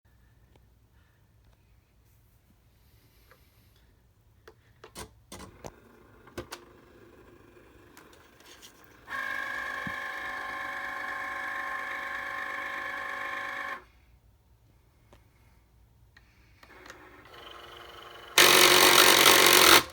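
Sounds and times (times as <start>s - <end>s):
cutting machine whining: 5.4s - 13.8s, 16.6s - 19.9s.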